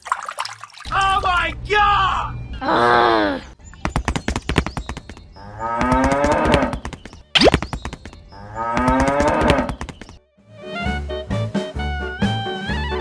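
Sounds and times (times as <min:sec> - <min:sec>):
music: 0:01.0 - 0:03.9, 0:07.2 - 0:13.0.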